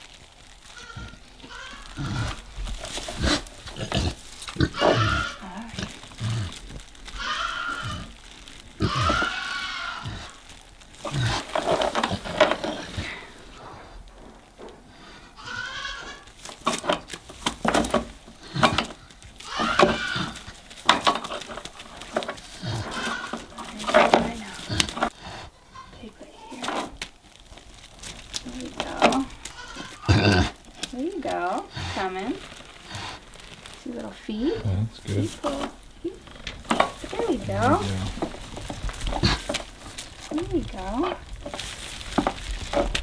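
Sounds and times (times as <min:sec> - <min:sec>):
pig giving short pitched calls: 0:03.2 - 0:06.5.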